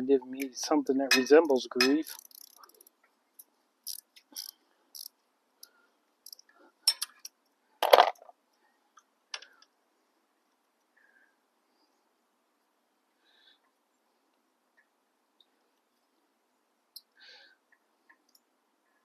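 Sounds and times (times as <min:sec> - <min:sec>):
metal tools clinking: 0:01.0 - 0:02.8, 0:06.8 - 0:07.3.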